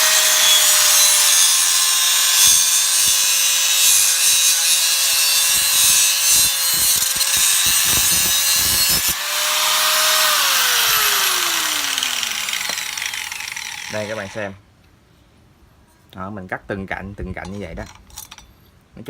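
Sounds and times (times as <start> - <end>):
angle grinder cutting steel: 0.0 - 14.5.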